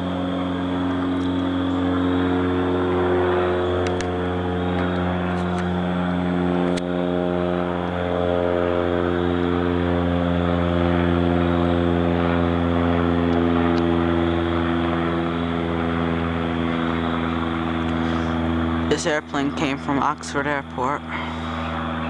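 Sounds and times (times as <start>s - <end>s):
engine droning: 0.0s - 22.0s.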